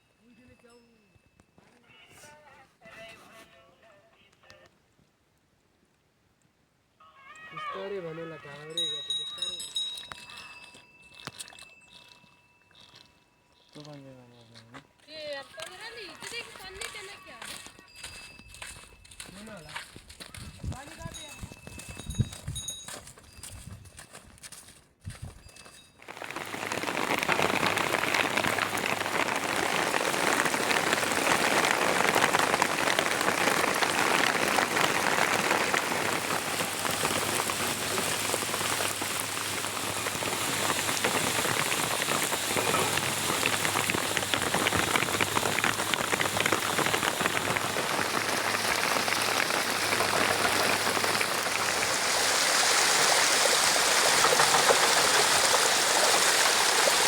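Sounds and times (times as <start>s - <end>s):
steady rain falling: 26.0s - 57.0s.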